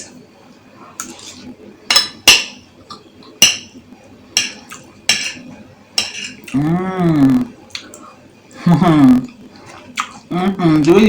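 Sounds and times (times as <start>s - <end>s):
cutlery clinking against a bowl: 1.0s - 3.8s, 4.4s - 6.6s
person humming: 6.5s - 7.5s, 8.7s - 9.3s, 10.3s - 11.0s.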